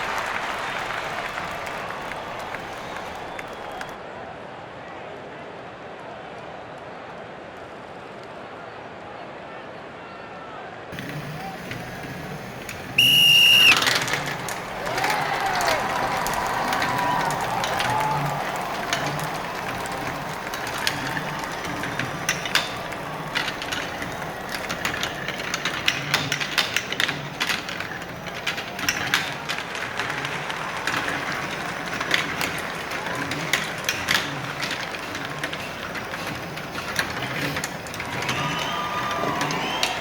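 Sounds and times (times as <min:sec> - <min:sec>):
marbles clicking: 0:11.0 - 0:40.0.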